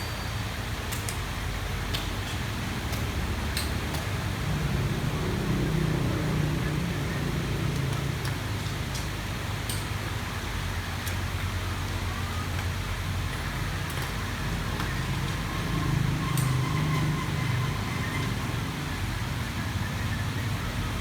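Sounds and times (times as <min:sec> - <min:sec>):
motorbike engine running: 0:01.6 - 0:08.9.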